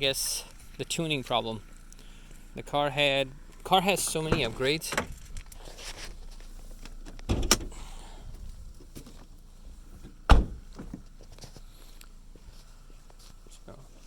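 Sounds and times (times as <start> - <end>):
faint handling noises: 3.4 - 7.7.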